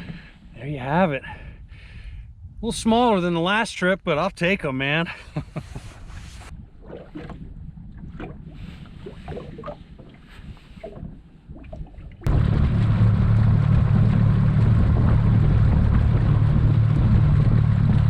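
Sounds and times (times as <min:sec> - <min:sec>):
wind noise: 0:00.0 - 0:03.2, 0:05.3 - 0:18.0
boat motor running: 0:12.2 - 0:18.0.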